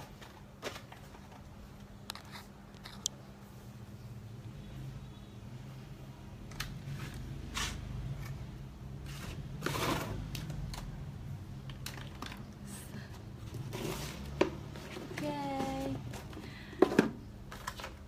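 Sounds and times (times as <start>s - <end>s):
small objects clicking and rustling: 11.6s - 12.7s.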